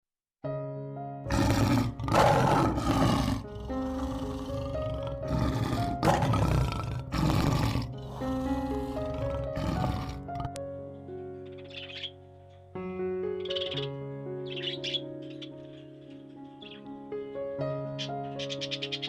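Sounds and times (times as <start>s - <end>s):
background music with sustained notes: 0.4s - 19.0s
loud animal roars: 1.3s - 10.6s.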